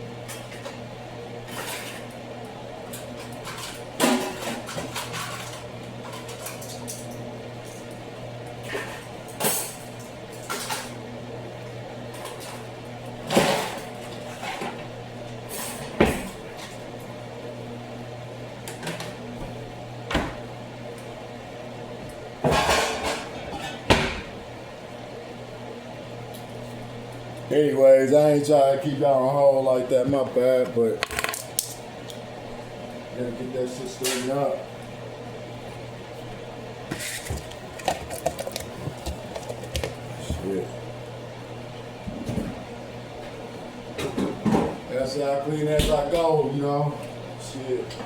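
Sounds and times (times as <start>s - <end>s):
pots and dishes clinking: 22.4s - 24.3s.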